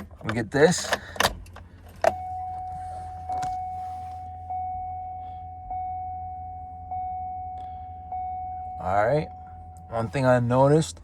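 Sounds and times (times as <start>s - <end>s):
ignition key clicks: 0.0s - 3.8s
car warning chime: 2.0s - 11.0s.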